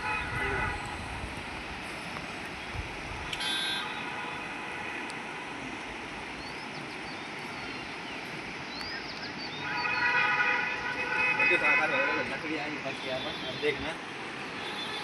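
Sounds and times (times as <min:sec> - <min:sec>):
rain hissing: 0:00.0 - 0:11.5.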